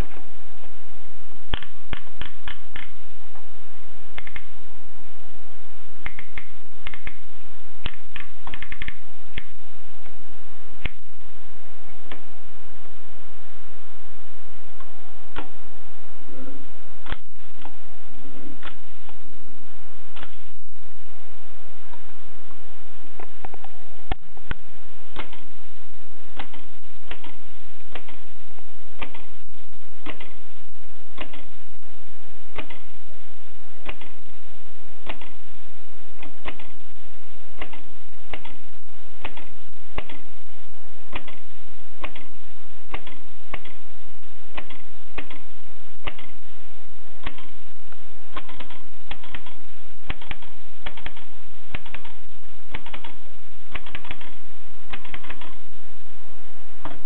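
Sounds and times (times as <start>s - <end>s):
typewriter clacking: 53.8s - 55.6s.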